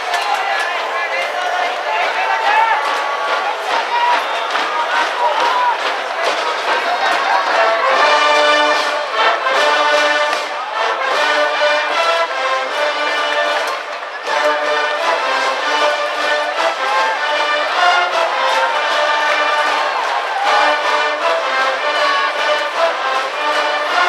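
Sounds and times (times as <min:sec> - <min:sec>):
brass band playing cheering tune: 0:00.0 - 0:24.0.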